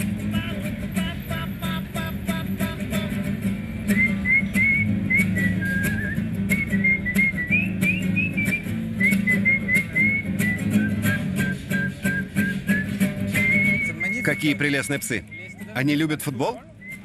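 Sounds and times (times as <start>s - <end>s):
acoustic guitar strumming: 0.0s - 17.0s
whistled melody: 3.9s - 15.8s, 16.8s - 17.0s.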